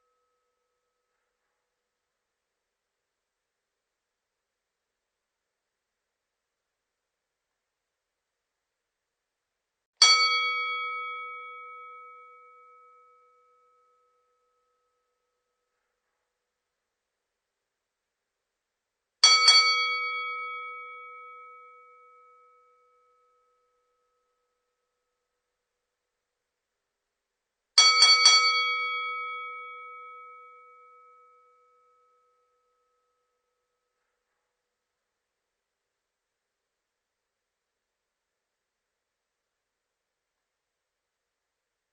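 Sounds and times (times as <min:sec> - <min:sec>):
boxing ring bell struck: 0:10.0 - 0:13.9
boxing bell ding: 0:10.0 - 0:14.7, 0:19.2 - 0:22.7, 0:27.8 - 0:33.0.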